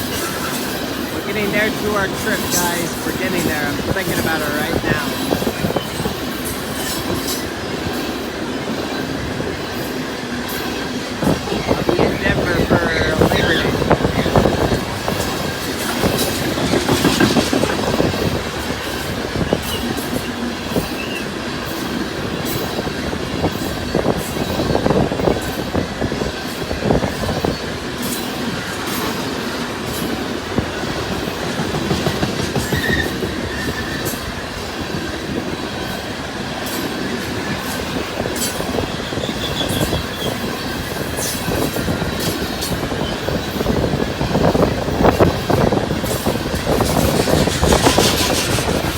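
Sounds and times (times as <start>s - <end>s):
freight train rumbling past: 0.0s - 48.9s
steel wheels clicking over rail joints: 0.0s - 48.9s
wheel squeals: 32.6s - 34.3s, 38.4s - 43.7s, 45.0s - 48.9s.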